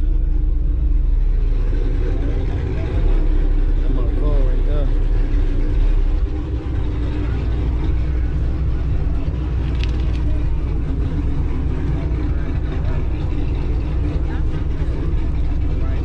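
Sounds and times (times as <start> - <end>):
car engine running at low speed: 0.0 - 16.0.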